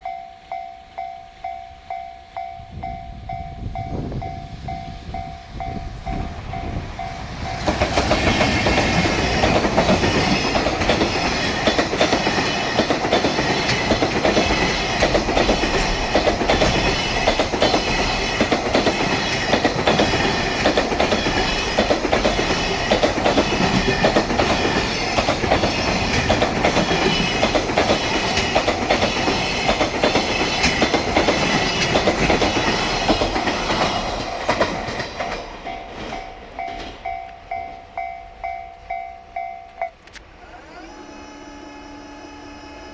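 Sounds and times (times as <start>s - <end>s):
train wheels clattering: 4.2s - 39.0s
level crossing bell ringing: 35.6s - 40.1s.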